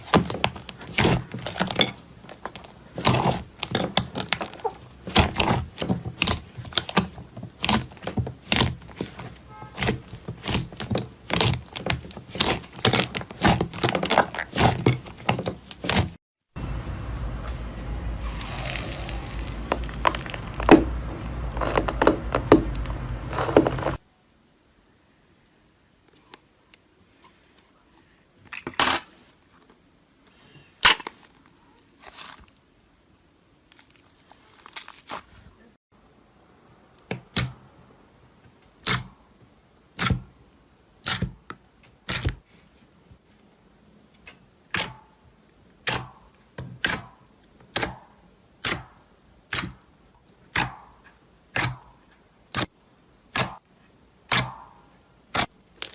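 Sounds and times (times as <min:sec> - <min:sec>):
slime crackling and popping: 0:18.2 - 0:22.8.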